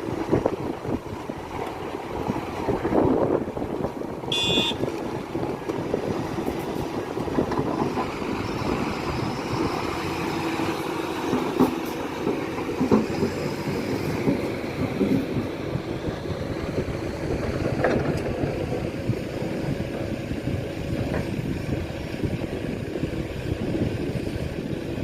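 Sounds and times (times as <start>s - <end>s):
diesel excavator running: 0.0s - 25.0s
high beep: 4.3s - 4.8s.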